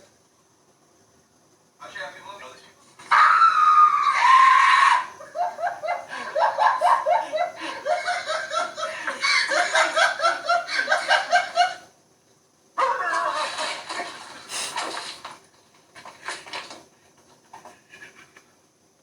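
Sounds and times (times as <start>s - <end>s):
loud drawn-out cry: 3.0s - 5.4s
person laughing: 5.2s - 11.8s.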